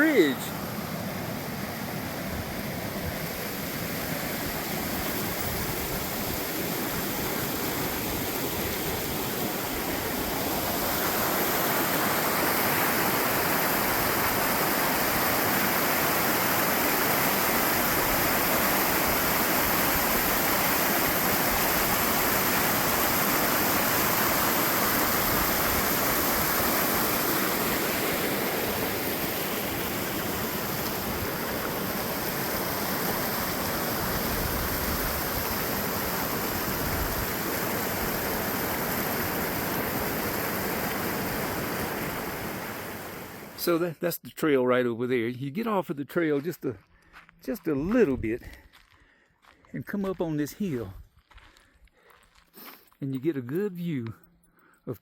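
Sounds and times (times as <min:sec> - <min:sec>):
mountain stream rushing: 0:00.0 - 0:43.7.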